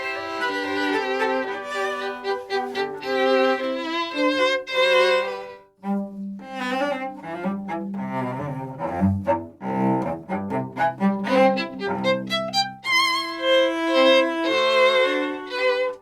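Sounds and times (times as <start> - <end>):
cello notes: 0.0 - 16.0
violins playing: 0.0 - 16.0.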